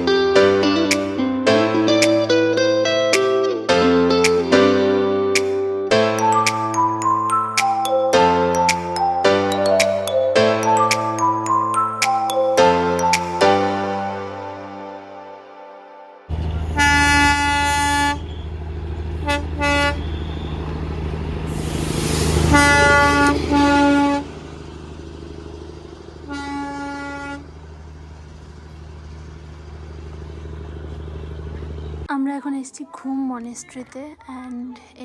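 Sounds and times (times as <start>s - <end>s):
engine rumble: 16.3s - 32.1s
vehicle horn tooting: 16.4s - 18.6s, 19.2s - 20.6s, 22.4s - 24.4s, 26.2s - 27.5s
rushing hiss: 21.3s - 23.6s.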